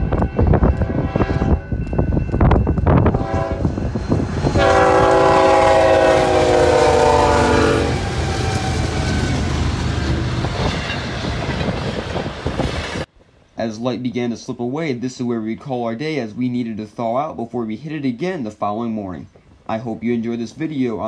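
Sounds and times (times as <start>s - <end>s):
train cars rushing and rumbling: 0.0s - 13.1s
locomotive air horn: 0.3s - 1.6s, 3.0s - 3.8s, 4.4s - 9.4s.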